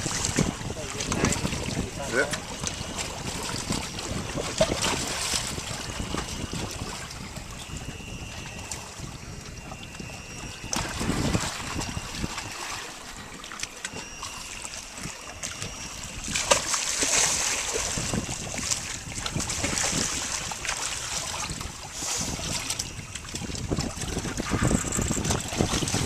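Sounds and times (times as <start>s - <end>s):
fish thrashing water splashing: 0.0s - 26.0s.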